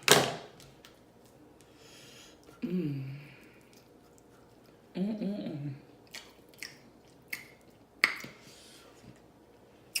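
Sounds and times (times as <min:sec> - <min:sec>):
wet mouth smacking clicks: 0:06.1 - 0:08.3.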